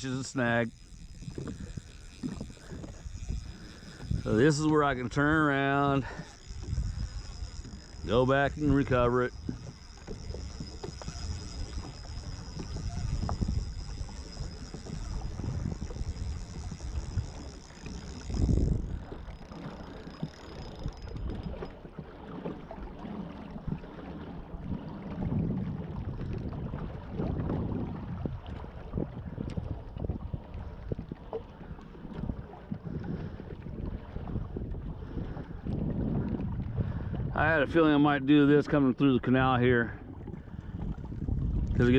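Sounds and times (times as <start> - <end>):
faint high whine: 0.0 - 21.7
water sloshing: 0.0 - 37.1
wind buffeting microphone: 0.0 - 41.9.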